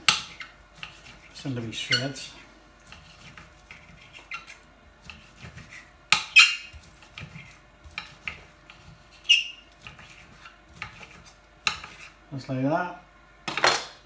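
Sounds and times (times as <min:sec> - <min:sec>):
knife slicing on chopping board: 0:02.8 - 0:12.2.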